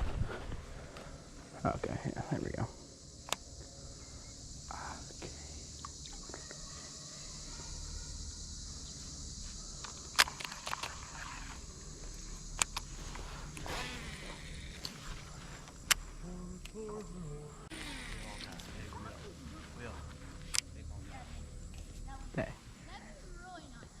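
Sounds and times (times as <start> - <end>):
low wind rumble: 0.0 - 5.8
high insect chorus droning: 0.0 - 24.0
sharp clicks: 3.2 - 3.5, 9.8 - 11.2, 12.5 - 12.9, 15.6 - 16.0.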